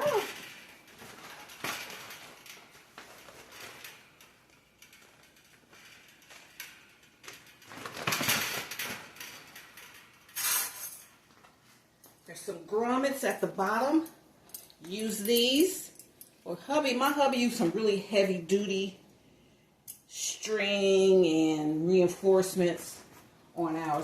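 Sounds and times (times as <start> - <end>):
plastic cover rustling: 0.0 - 9.8.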